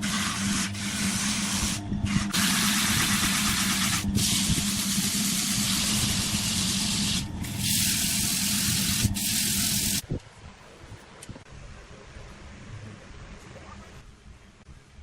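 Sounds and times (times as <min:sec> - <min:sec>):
hiss of wood being turned: 0:00.0 - 0:10.0.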